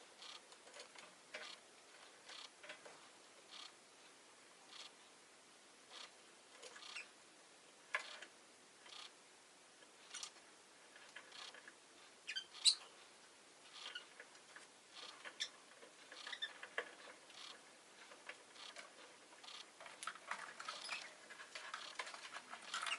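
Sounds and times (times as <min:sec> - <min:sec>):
bird squeak: 0:12.3 - 0:12.9.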